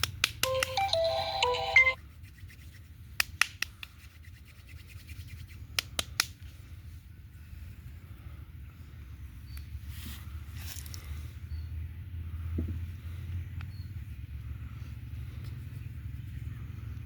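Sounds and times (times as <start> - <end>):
sharp clicks: 0.0 - 1.1
short tune: 0.4 - 2.0
hands rubbing on skin: 2.2 - 6.3.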